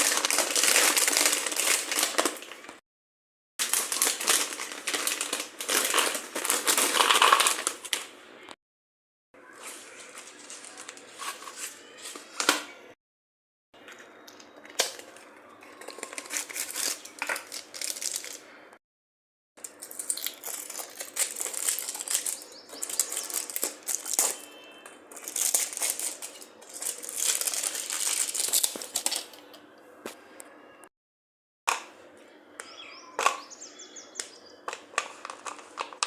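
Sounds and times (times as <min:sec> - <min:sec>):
snack packaging crinkling: 0:00.0 - 0:02.8, 0:03.6 - 0:08.2, 0:14.4 - 0:18.5, 0:19.6 - 0:29.6, 0:34.7 - 0:36.0.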